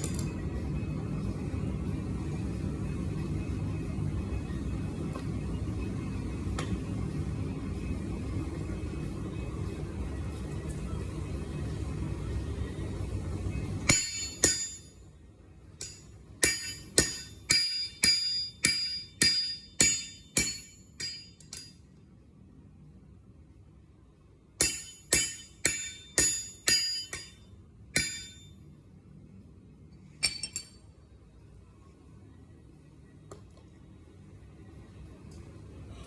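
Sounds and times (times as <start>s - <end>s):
hammer ringing on anvil: 13.9s - 15.0s, 15.8s - 21.8s, 24.6s - 28.6s.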